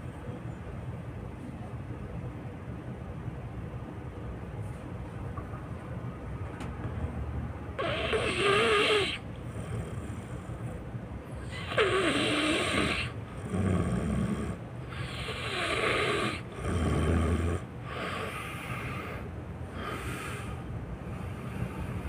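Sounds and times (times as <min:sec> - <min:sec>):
person snoring: 0:07.8 - 0:10.3, 0:11.4 - 0:19.2.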